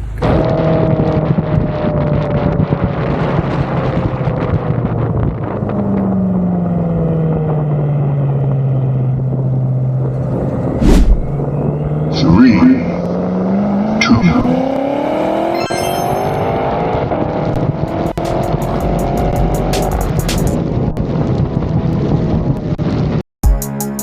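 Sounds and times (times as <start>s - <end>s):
car engine running: 0.0s - 0.8s
wind and road noise: 0.0s - 23.2s.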